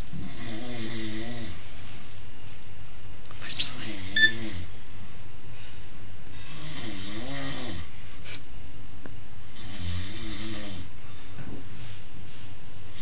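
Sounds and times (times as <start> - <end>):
person snoring: 0.2 - 1.6, 6.4 - 7.9, 9.5 - 10.9.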